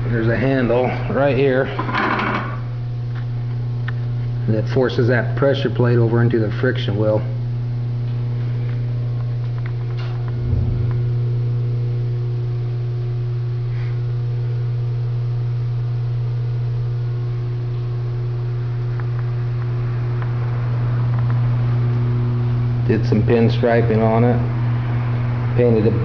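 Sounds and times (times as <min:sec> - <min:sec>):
steady low hum: 0:00.0 - 0:26.0
short low thump: 0:10.3 - 0:11.3.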